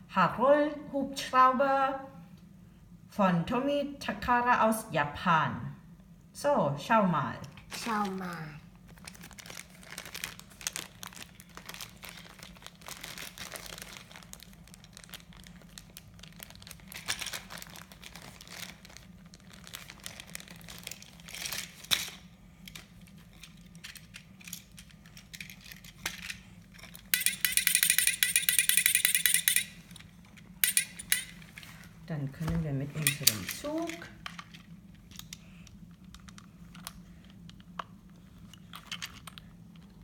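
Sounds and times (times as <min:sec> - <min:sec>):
plastic packaging crinkling: 0:07.7 - 0:27.2.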